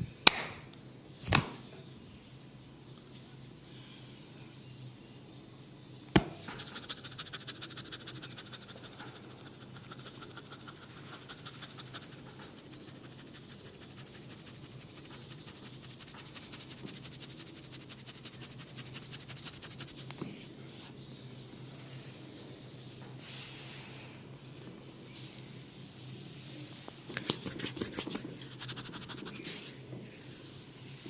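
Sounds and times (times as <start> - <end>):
sharp snap: 0.2 - 1.6, 6.1 - 6.5
fingers scratching through hair: 6.4 - 20.1, 26.4 - 29.8.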